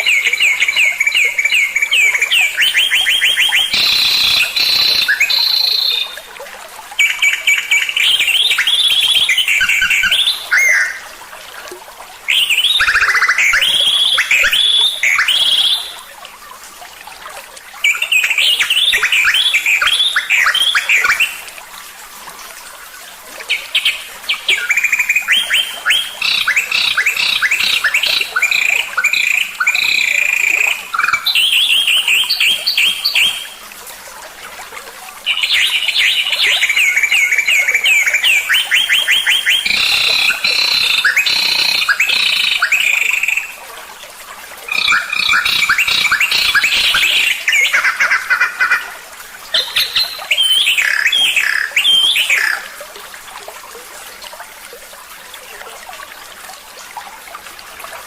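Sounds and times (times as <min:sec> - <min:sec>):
songbird chirping and trilling: 0:00.0 - 0:06.2, 0:07.0 - 0:11.0, 0:44.7 - 0:48.8, 0:49.6 - 0:52.7.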